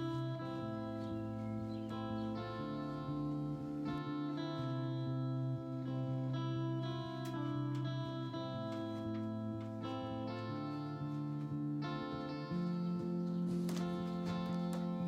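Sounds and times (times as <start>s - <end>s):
guitar instrumental music: 0.0s - 15.0s.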